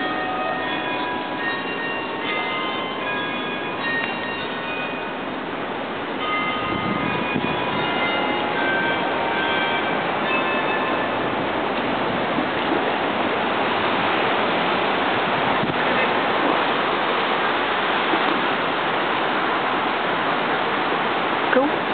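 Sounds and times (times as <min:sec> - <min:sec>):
steady rushing noise: 0:04.7 - 0:21.9.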